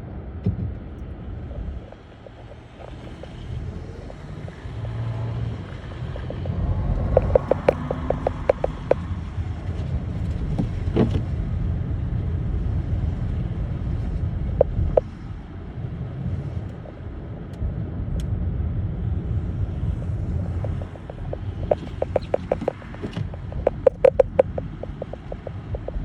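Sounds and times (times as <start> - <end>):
car rumbling on snowy road: 0.0 - 26.0
sharp clicks: 1.8 - 9.0, 20.6 - 26.0.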